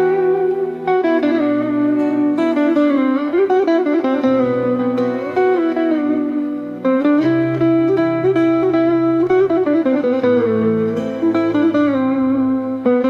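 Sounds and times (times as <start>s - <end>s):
guitar music with bass line: 0.0s - 13.0s.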